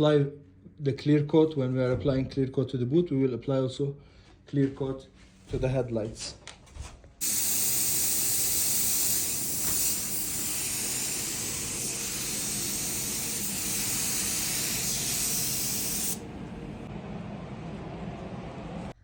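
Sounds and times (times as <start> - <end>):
paint spray gun hissing: 7.2 - 16.2.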